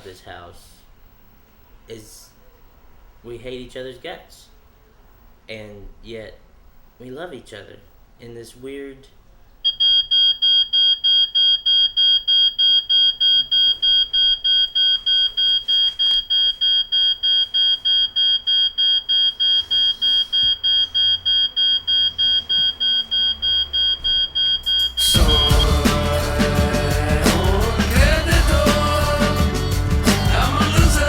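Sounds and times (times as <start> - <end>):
smoke alarm beeping: 9.6 - 26.8.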